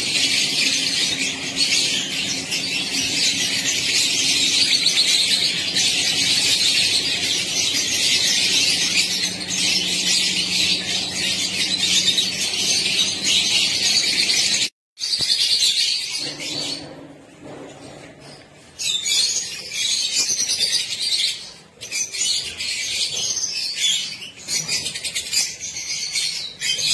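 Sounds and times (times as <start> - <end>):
budgerigars chattering and chirping: 0.0 - 14.7.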